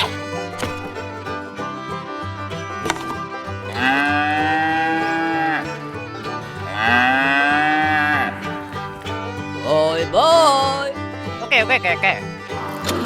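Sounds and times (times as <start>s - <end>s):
upbeat banjo music: 0.0s - 13.0s
cow mooing: 3.7s - 5.7s, 6.6s - 8.6s.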